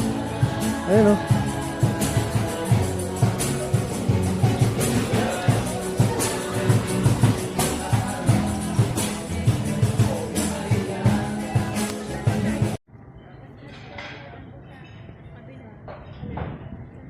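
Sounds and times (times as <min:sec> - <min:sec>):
background music with beat: 0:00.0 - 0:12.8
tambourine-like percussion: 0:00.0 - 0:12.8.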